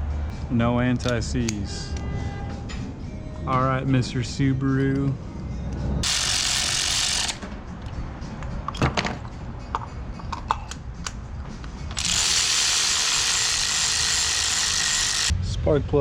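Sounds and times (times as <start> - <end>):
tools clicking and tapping: 1.0 - 2.0, 7.2 - 12.4.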